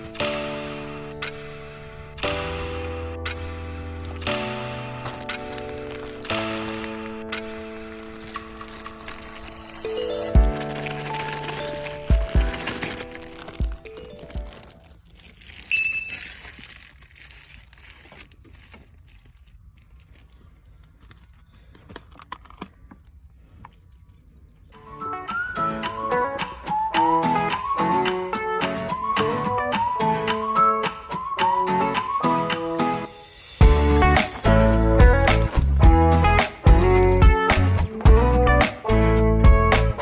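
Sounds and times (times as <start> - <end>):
sharp ringing clink: 15.7 - 16.4
acoustic guitar music: 24.9 - 40.0.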